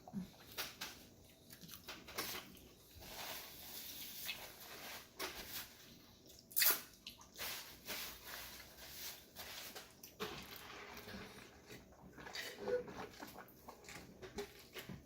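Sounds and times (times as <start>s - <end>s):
wet chewing sounds: 0.1s - 3.0s.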